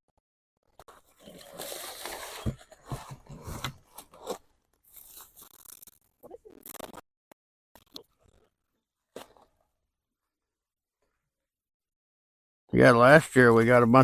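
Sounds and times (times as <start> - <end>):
soil crunching and scraping: 0.8 - 6.9.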